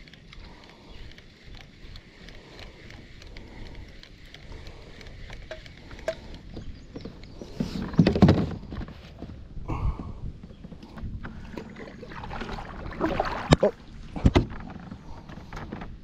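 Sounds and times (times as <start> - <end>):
water and kayak hull noise: 10.4 - 16.0.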